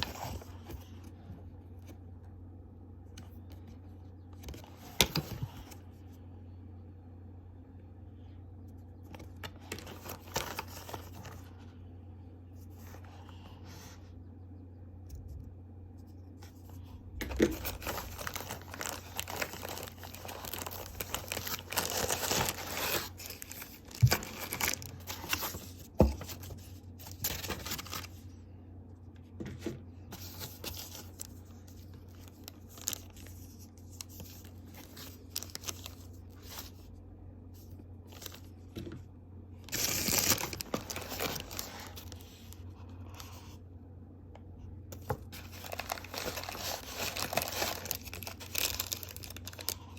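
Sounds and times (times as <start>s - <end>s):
packaging rustling and tearing: 9.2s - 11.5s, 16.6s - 28.2s, 30.2s - 36.9s, 39.7s - 42.6s, 45.0s - 49.9s.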